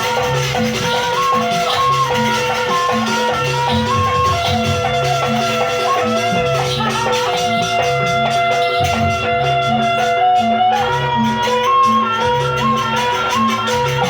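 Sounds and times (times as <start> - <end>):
gamelan music: 0.0 - 14.0.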